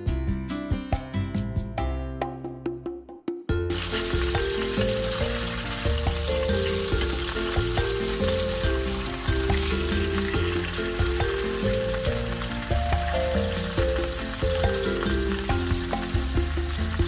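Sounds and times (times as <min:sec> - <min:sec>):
background music with melody: 0:00.0 - 0:17.0
chicken sizzling in oil: 0:03.7 - 0:17.0.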